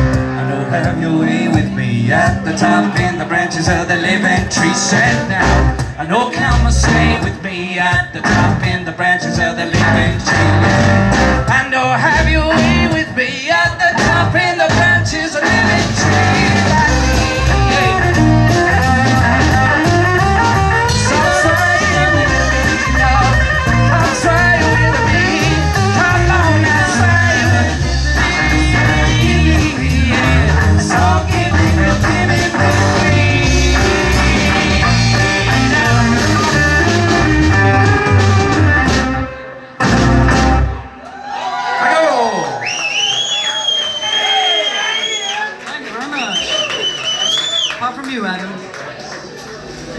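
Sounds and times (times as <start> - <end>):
person singing: 0.0 - 38.7
blues-rock band playing: 0.0 - 41.2.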